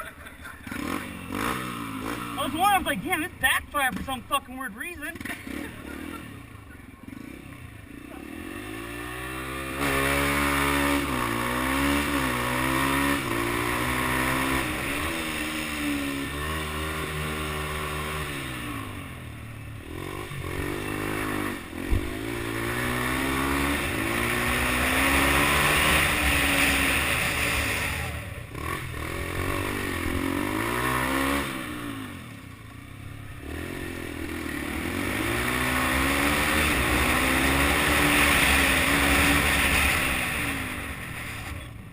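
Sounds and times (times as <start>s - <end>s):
dirt bike engine revving: 0.0s - 41.9s.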